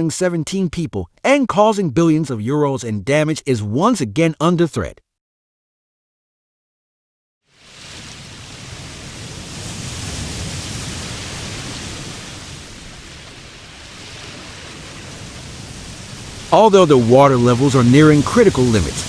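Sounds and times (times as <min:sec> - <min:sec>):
floodwater rushing: 0:07.6 - 0:19.0.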